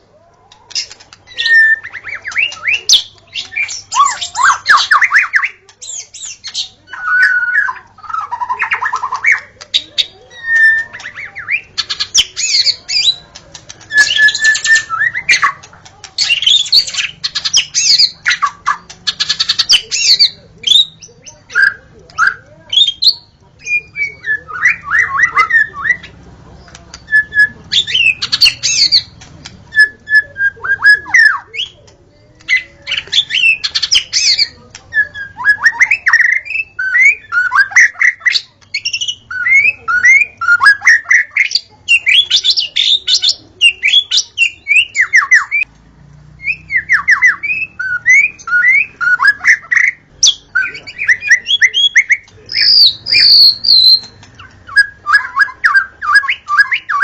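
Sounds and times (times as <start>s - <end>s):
bird singing whistled notes: 13.8s - 15.6s, 46.4s - 57.0s.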